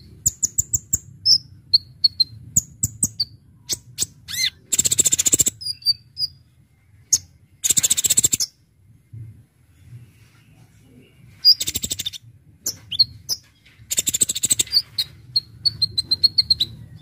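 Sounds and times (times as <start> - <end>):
bird rattling trills: 4.3 - 5.9, 7.6 - 8.5, 11.4 - 16.8
bird chips: 7.1 - 8.6, 11.3 - 17.0.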